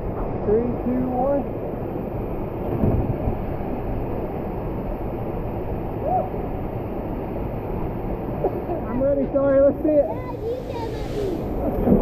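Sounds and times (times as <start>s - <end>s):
low thump: 2.7s - 3.4s
waterfall rushing: 10.0s - 12.0s.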